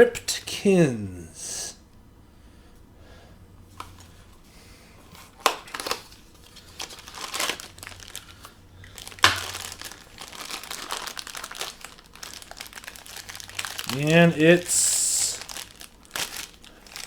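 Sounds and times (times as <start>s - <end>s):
packaging crinkling and tearing: 5.2s - 17.0s.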